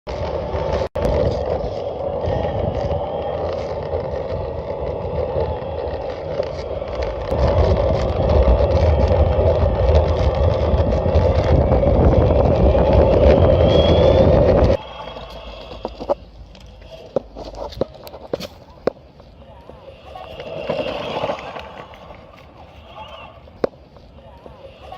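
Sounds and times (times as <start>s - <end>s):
skateboard wheels rumbling: 0.1s - 24.9s
electric skateboard motor drone: 0.2s - 16.7s, 19.6s - 23.7s.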